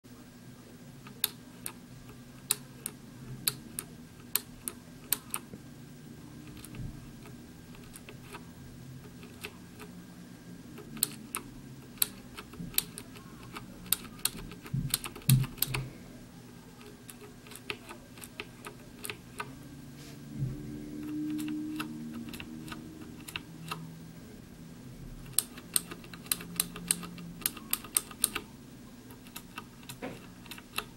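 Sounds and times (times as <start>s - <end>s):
mechanical keyboard clicks: 2.4s - 5.4s, 6.5s - 8.4s, 10.8s - 15.8s, 21.0s - 23.8s, 25.2s - 28.5s, 29.1s - 30.9s.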